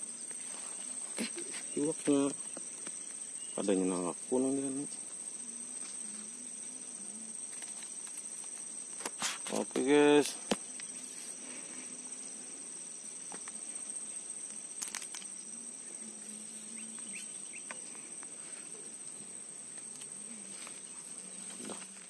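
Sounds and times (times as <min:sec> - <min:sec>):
high-pitched insect trilling: 0:00.0 - 0:22.0.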